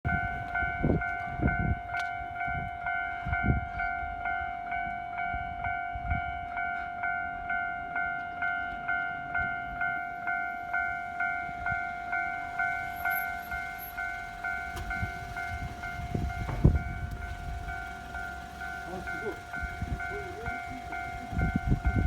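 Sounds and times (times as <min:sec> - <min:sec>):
level crossing warning bell ringing: 0:00.1 - 0:22.0
heavy low thumps: 0:14.7 - 0:17.9.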